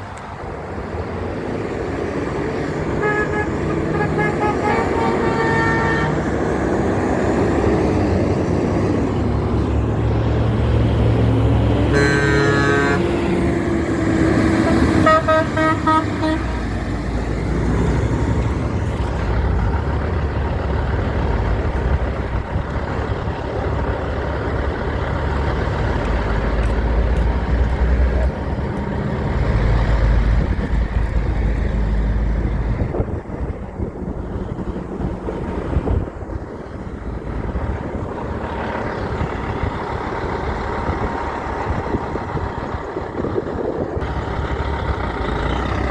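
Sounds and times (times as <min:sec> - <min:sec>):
truck engine rumbling: 0:00.0 - 0:45.9
truck horn blowing: 0:02.9 - 0:06.4, 0:11.9 - 0:16.8.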